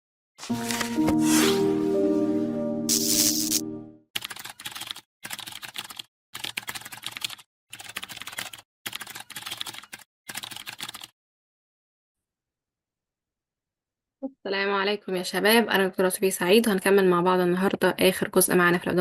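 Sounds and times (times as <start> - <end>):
computer keyboard typing: 4.2 - 11.1.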